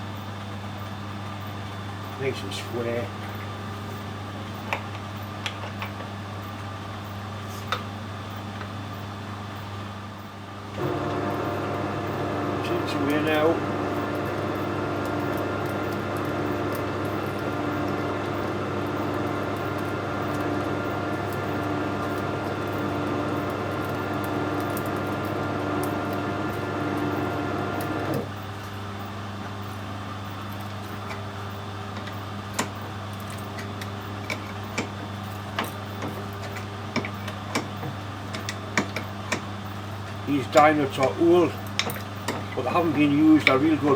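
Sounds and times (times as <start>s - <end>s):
metal lathe running: 10.8s - 28.3s.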